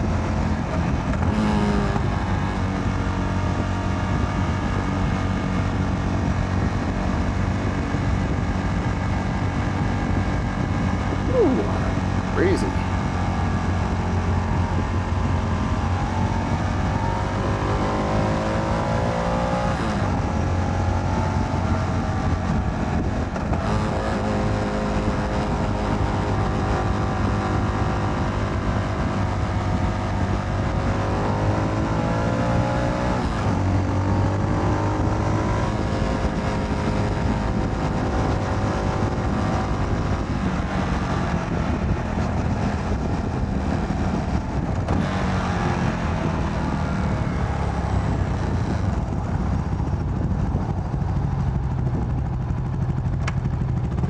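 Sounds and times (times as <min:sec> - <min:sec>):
motorcycle engine revving: 0:00.1 - 0:54.0
wind noise: 0:24.9 - 0:54.0.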